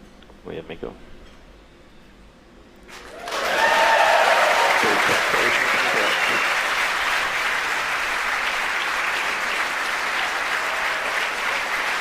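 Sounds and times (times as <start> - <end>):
crowd applauding: 2.9 - 12.0.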